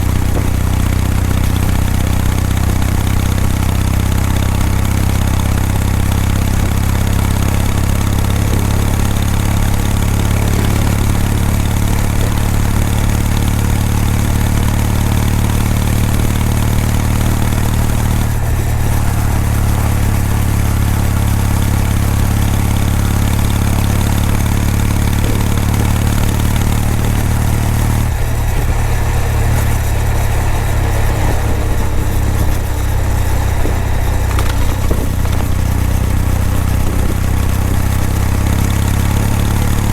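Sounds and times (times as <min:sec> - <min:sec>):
motorcycle exhaust: 0:00.0 - 0:39.9.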